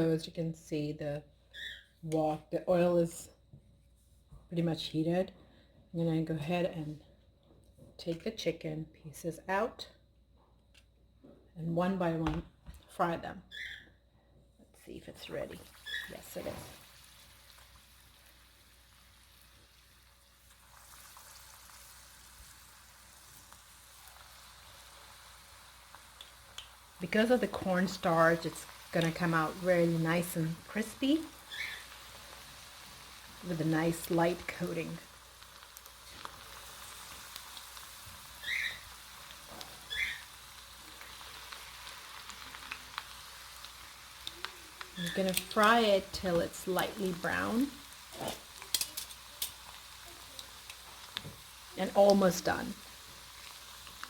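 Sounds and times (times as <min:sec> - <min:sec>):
faint crackles: 0:15.4 - 0:54.0
chicken sizzling in hot oil: 0:15.6 - 0:54.0.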